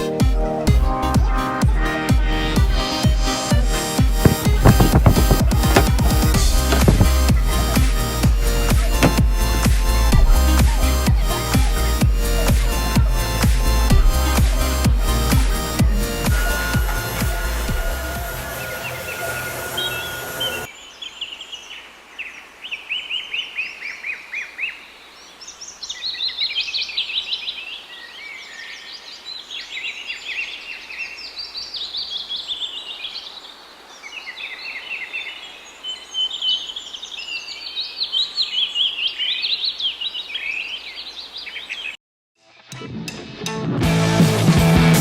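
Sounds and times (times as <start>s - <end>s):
birds chirping: 4.1s - 42.0s
background music: 42.6s - 45.0s.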